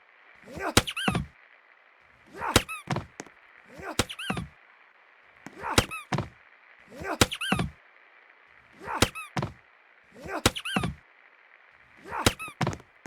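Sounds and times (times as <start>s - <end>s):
fan clunk and squeak: 0.7s - 1.3s, 2.5s - 3.3s, 4.0s - 4.5s, 5.5s - 6.3s, 7.2s - 7.7s, 9.0s - 9.6s, 10.4s - 11.0s, 12.2s - 12.8s.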